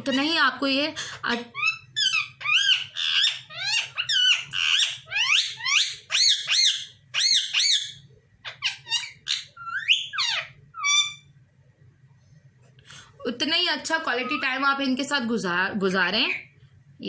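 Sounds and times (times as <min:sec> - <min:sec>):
parrot squawking: 0:01.2 - 0:11.3, 0:13.9 - 0:14.7.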